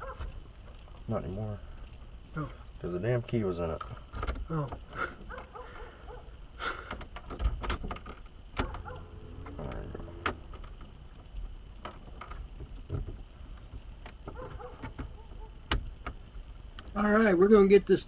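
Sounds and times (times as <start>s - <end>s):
parts clicking and rattling: 6.7s - 17.0s.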